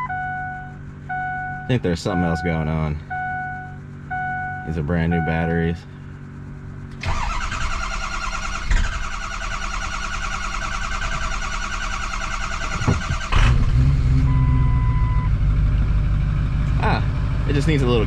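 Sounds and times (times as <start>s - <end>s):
diesel engine running: 0.0s - 18.0s
diesel engine cranking on starter: 6.8s - 15.9s.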